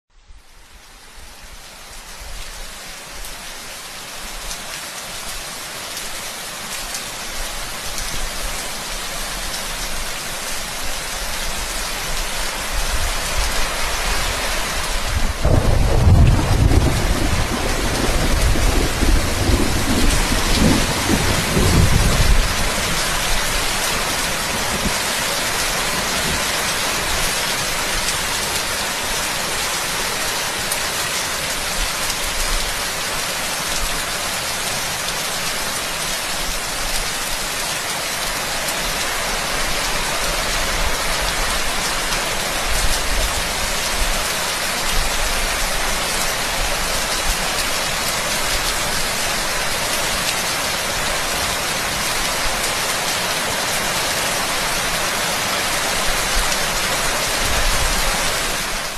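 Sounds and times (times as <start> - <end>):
dense rain falling: 0.2 - 58.9
low rumble of thunder: 15.2 - 23.4.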